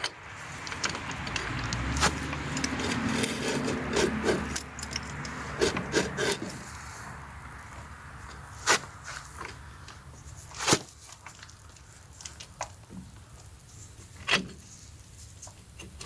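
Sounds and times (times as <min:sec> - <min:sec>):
metal ticks and clinks: 0:00.0 - 0:03.3, 0:04.4 - 0:05.9.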